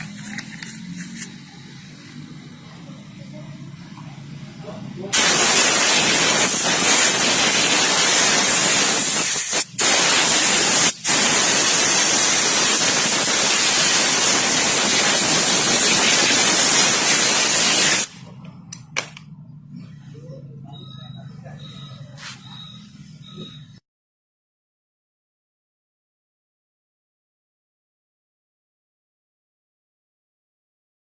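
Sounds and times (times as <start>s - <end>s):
loud steady hiss: 5.1s - 18.2s.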